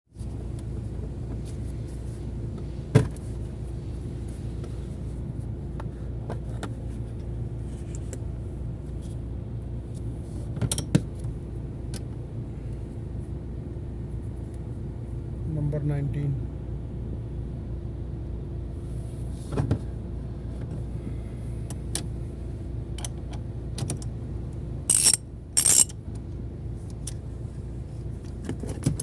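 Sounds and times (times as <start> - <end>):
vehicle engine idling: 16.1 - 28.6.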